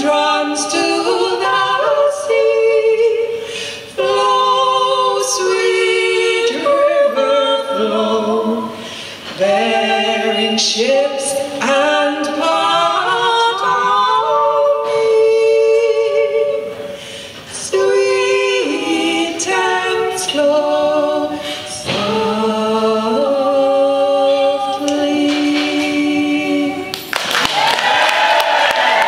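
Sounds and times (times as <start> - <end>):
women singing in harmony: 0.0 - 27.0
singers breathing: 3.2 - 4.0, 8.7 - 9.4, 16.8 - 17.6, 21.3 - 21.9.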